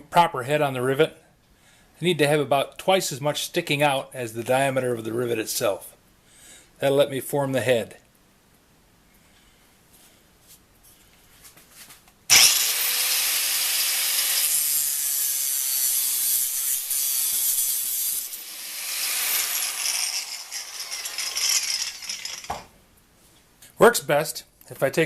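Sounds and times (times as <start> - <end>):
power tool cutting metal rod: 12.3 - 22.6.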